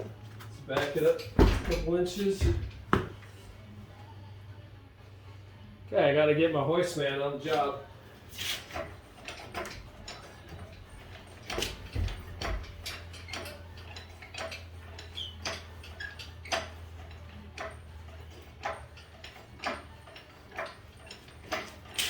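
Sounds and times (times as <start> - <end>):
hoist metallic clicks: 8.4 - 22.0.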